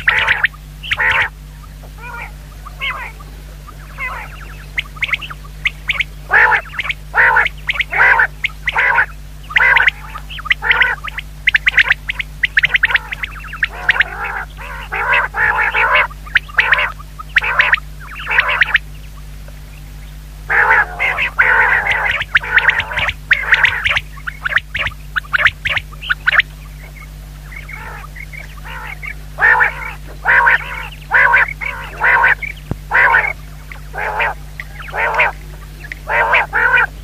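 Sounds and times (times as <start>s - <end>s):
faint low hum: 0.0s - 37.0s
quail calling: 0.0s - 37.0s.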